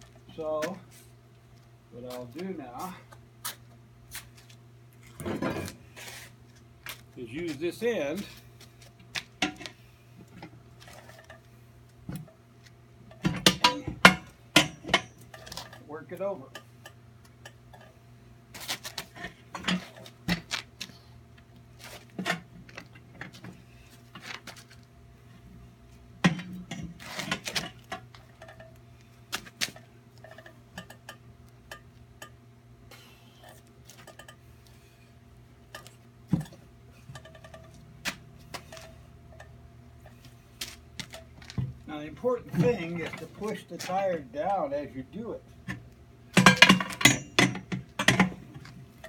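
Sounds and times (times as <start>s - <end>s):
steady low hum: 0.0s - 49.0s
metal bar clanking on wheel rim: 13.1s - 15.8s, 19.0s - 20.5s, 26.2s - 28.7s, 35.7s - 39.5s, 45.7s - 48.8s.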